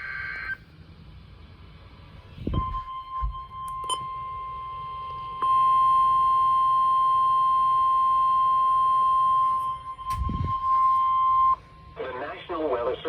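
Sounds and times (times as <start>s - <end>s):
steady alarm tone: 2.4s - 12.0s.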